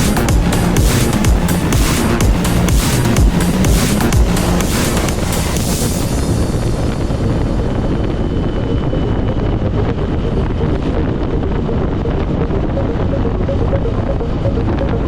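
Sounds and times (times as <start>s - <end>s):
vehicle engine running: 0.0s - 15.0s
wind rushing across microphone: 3.4s - 15.0s.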